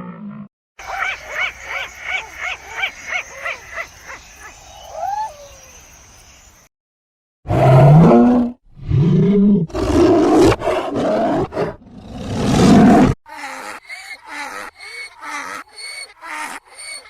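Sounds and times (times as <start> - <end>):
animal roaring: 7.5 - 13.8.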